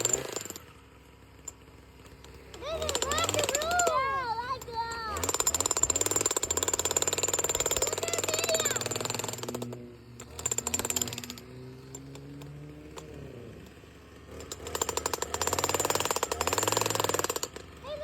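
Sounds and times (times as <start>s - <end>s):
demolition breaker hammering: 2.6s - 12.5s, 14.4s - 17.8s.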